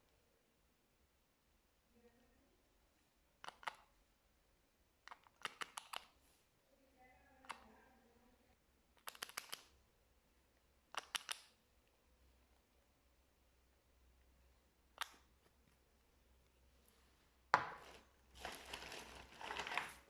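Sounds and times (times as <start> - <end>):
sharp clicks in clusters: 5.1 - 6.2, 9.0 - 9.7, 10.9 - 11.6.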